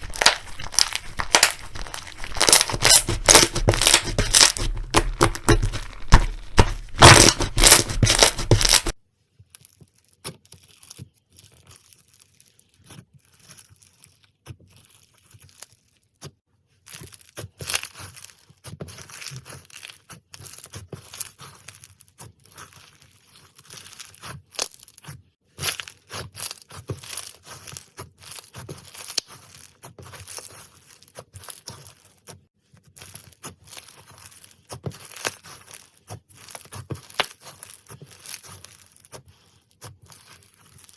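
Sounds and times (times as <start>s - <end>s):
slime crackling and popping: 0.0s - 9.0s, 37.0s - 37.4s.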